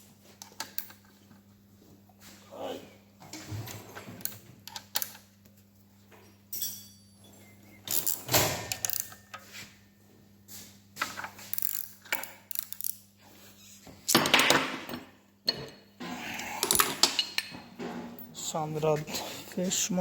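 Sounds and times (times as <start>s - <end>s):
metal clinks: 6.5s - 8.2s.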